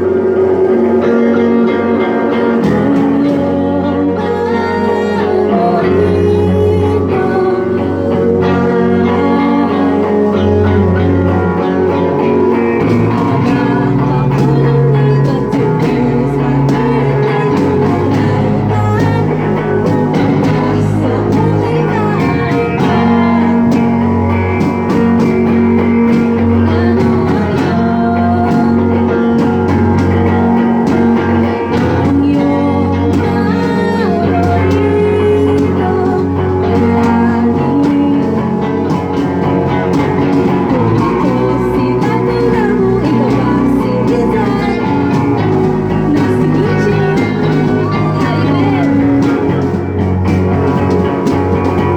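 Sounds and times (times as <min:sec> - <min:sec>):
bass line: 0:00.0 - 0:51.9
live band with guitars: 0:00.0 - 0:51.9.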